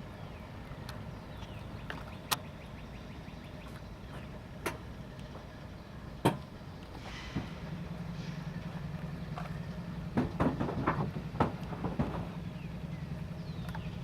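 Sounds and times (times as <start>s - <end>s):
freight train rumble: 3.9s - 14.0s.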